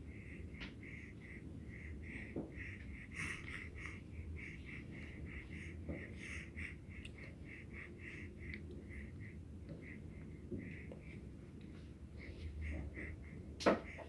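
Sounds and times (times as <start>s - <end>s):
baby congested breathing: 0.0s - 14.0s.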